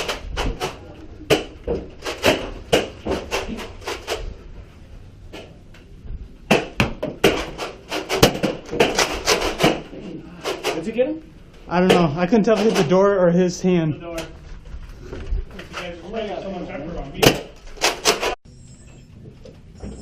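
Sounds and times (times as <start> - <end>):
foam darts hitting walls: 0.0 - 4.2, 6.5 - 10.8.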